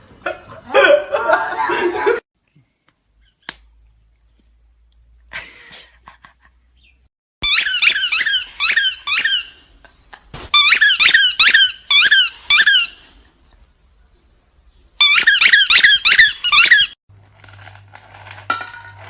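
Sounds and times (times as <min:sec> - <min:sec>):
high-pitched squeaks: 0:07.4 - 0:09.7, 0:10.6 - 0:13.0, 0:15.0 - 0:17.0.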